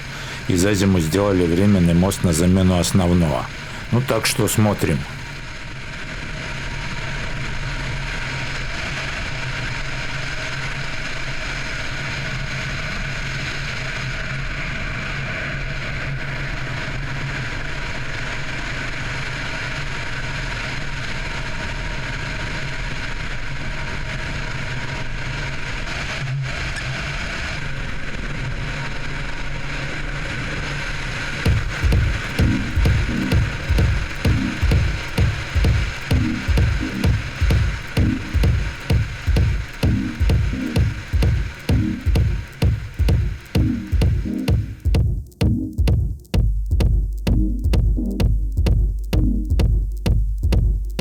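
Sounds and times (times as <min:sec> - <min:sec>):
car engine drone: 0:00.0 - 0:10.2, 0:31.5 - 0:45.0.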